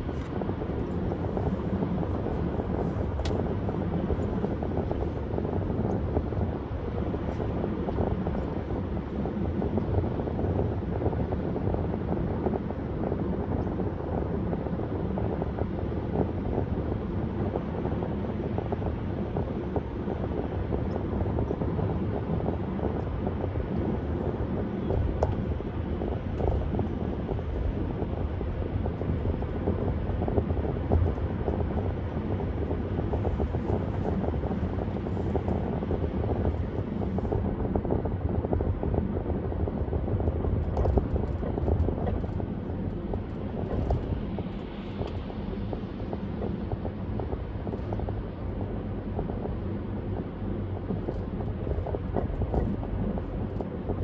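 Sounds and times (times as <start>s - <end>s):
road and wind noise: 0.0s - 54.0s.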